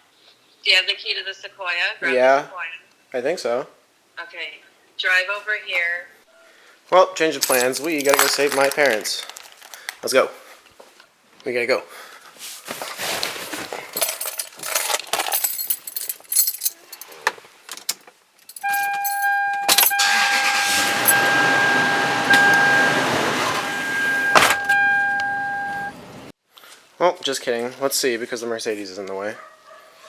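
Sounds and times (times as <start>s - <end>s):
keys jangling: 7.4s - 10.0s, 13.6s - 20.1s, 24.3s - 24.8s.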